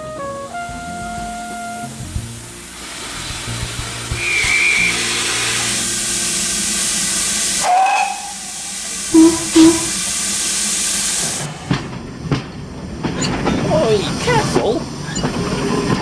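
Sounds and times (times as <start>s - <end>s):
steam locomotive hissing: 2.6s - 16.0s
train whistle blast: 4.2s - 5.8s, 7.6s - 10.2s.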